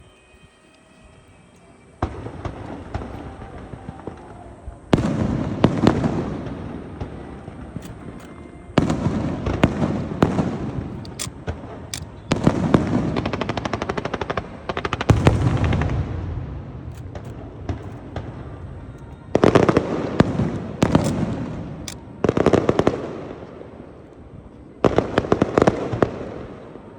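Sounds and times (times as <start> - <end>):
fireworks bursting: 1.8 - 23.9
fireworks crackling and popping: 8.8 - 18.6.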